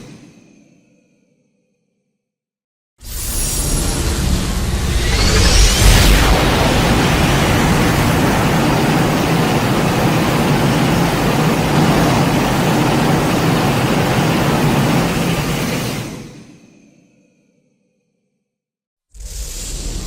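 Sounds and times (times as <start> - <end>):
low droning hum: 3.8 - 10.0
loud rushing rumble: 3.8 - 11.0.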